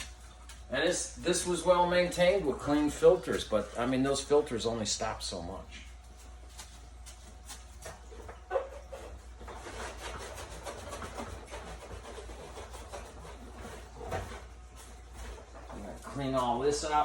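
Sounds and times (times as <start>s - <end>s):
cloth scrubbing plastic: 5.8s - 17.0s.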